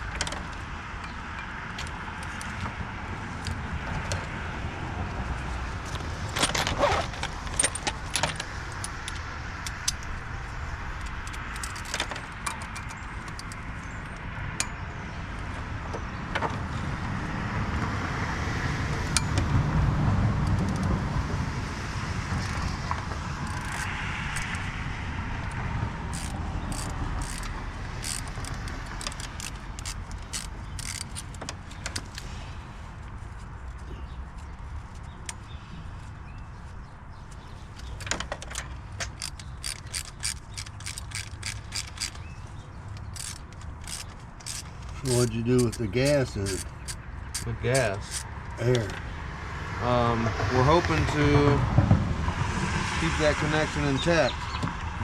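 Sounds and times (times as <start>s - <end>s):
metal hand tools clinking: 43.0s - 48.7s.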